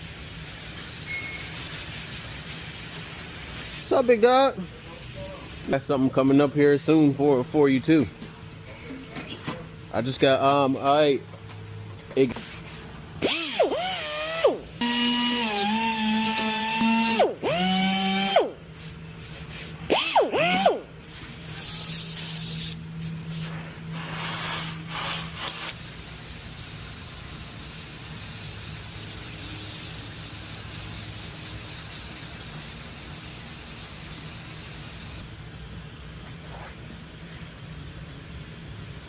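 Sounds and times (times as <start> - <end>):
power drill whining: 13.2 - 18.5, 19.9 - 20.8.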